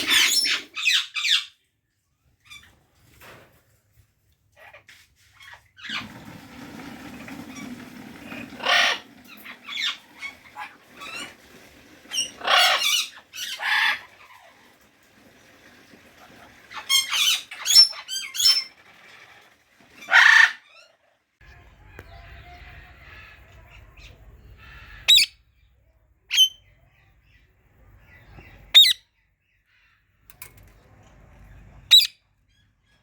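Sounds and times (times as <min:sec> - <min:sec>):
parrot screeching: 0:00.0 - 0:01.5, 0:08.6 - 0:11.4, 0:12.1 - 0:14.2, 0:16.8 - 0:18.7, 0:20.0 - 0:21.0, 0:24.6 - 0:25.4, 0:28.8 - 0:29.0, 0:31.9 - 0:32.2.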